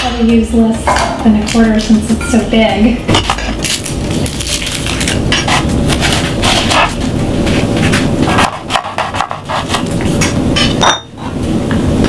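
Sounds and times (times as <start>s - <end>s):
knife chopping on cutting board: 7.9s - 9.9s.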